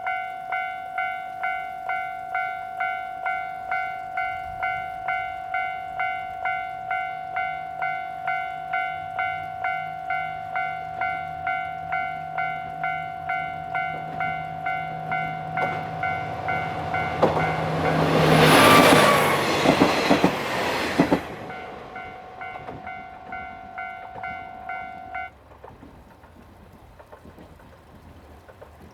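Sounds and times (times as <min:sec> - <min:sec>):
level crossing bell ringing: 0:00.0 - 0:19.5, 0:21.4 - 0:25.3
diesel railcar passing: 0:00.0 - 0:28.9
train wheels clattering: 0:07.8 - 0:28.9.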